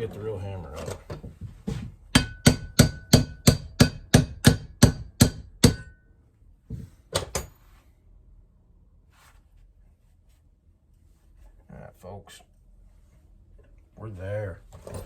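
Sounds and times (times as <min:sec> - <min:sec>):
hammer blows on metal: 0:02.2 - 0:06.0.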